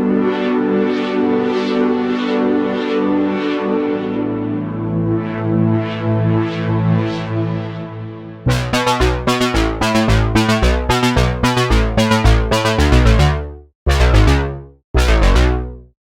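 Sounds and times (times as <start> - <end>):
synthesizer pad: 0.0 - 15.8
plucky synth notes: 8.5 - 15.9
synth bass line: 8.5 - 15.9
synth chords: 8.5 - 15.9.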